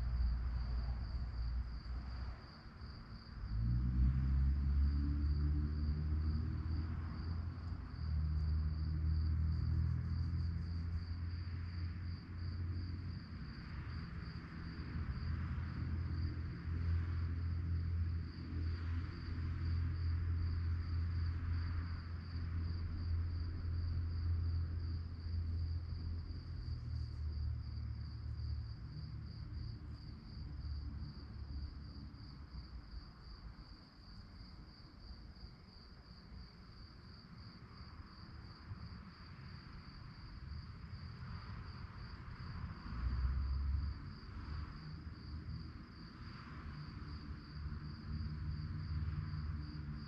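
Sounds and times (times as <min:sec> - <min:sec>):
crickets trilling: 0:16.9 - 0:50.0.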